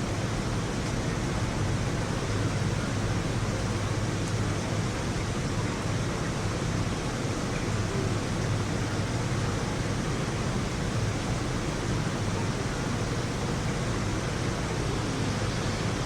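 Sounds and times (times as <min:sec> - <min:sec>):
heavy rain hissing: 0:06.6 - 0:16.0.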